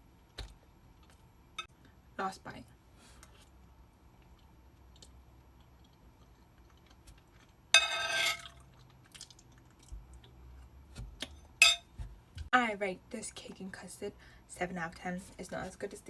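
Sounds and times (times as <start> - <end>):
close-up wet chewing: 4.2 - 7.6, 8.6 - 10.7.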